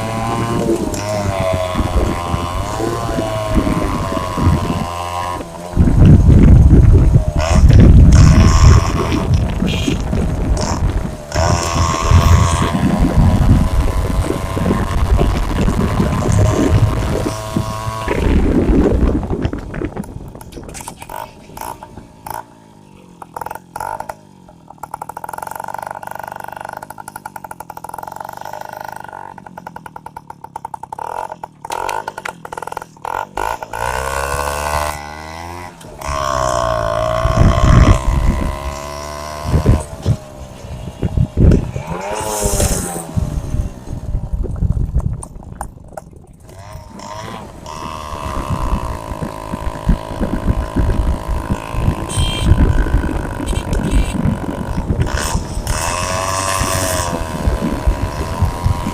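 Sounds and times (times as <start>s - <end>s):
two-stroke engine running and revving: 0.0s - 58.9s.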